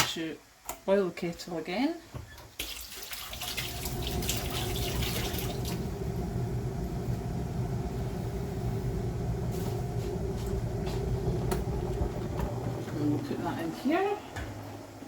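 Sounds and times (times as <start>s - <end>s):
tap water filling kettle: 2.4s - 6.0s, 10.4s - 13.5s.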